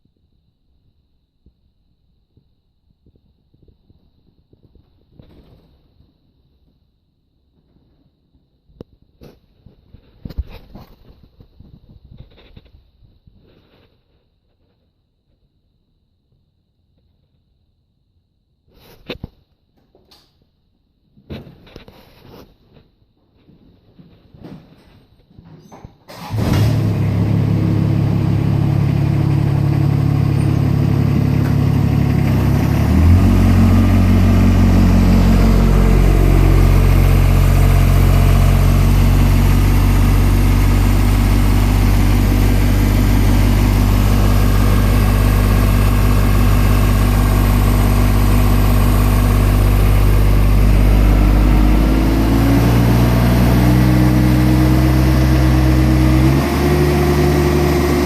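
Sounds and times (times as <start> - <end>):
garden tractor engine running: 26.2 - 58.0.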